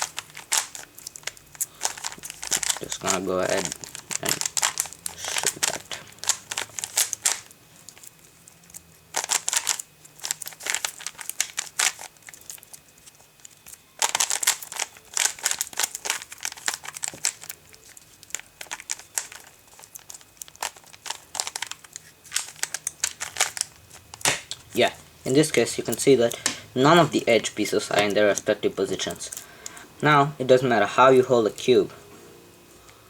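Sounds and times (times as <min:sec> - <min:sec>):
puzzle cube clicking and rattling: 0:00.0 - 0:29.8.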